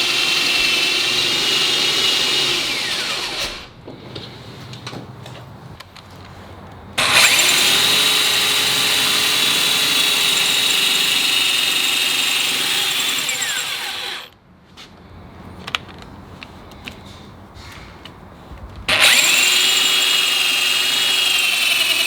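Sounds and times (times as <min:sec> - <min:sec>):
power drill whining: 0:00.0 - 0:03.8, 0:07.0 - 0:14.4, 0:18.9 - 0:22.0.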